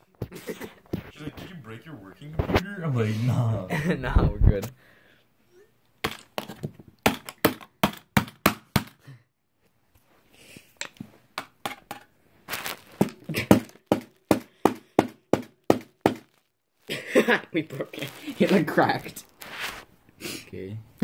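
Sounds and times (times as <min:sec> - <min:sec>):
hard knocks on hard object: 0:06.0 - 0:09.0, 0:13.0 - 0:16.2.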